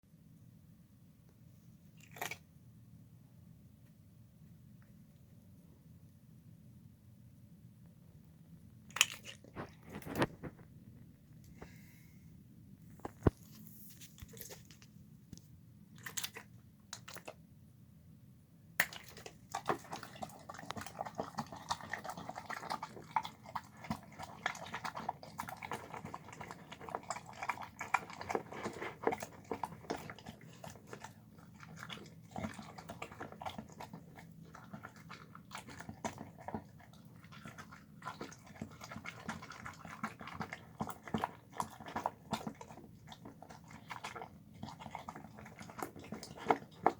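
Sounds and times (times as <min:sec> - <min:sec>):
dog chewing and crunching food: 0:01.9 - 0:02.5, 0:08.9 - 0:11.8, 0:12.9 - 0:17.4, 0:18.8 - 0:46.9.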